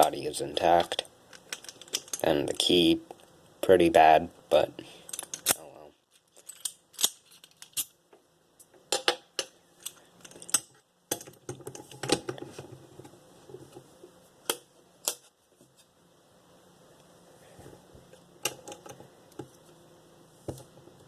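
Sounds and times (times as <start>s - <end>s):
padlock rattle: 1.3s - 2.2s.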